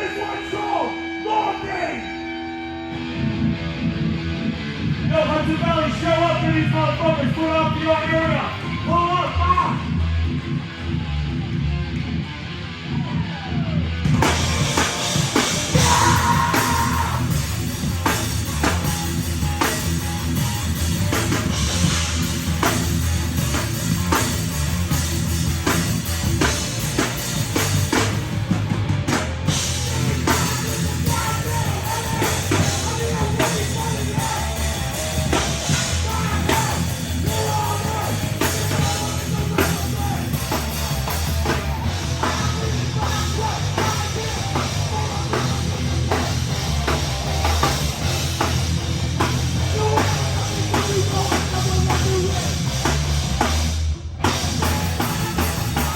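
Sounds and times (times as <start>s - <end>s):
heavy rock band playing: 0.0s - 55.9s
drum kit pounding fast beat: 13.9s - 55.9s.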